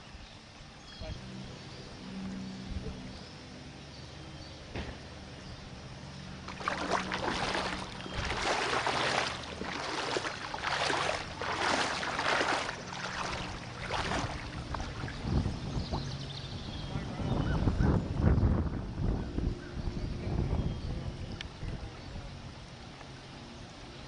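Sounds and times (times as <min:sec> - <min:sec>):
steady low hum: 0:00.0 - 0:24.0
wading through water: 0:05.7 - 0:16.9.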